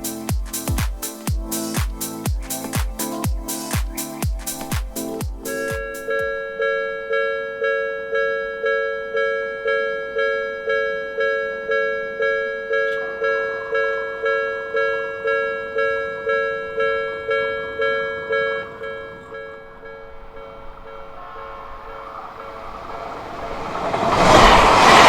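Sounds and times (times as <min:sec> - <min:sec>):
train approaching rushing noise: 0:00.0 - 0:06.2, 0:19.8 - 0:25.0
level-crossing warning bell: 0:05.5 - 0:22.3.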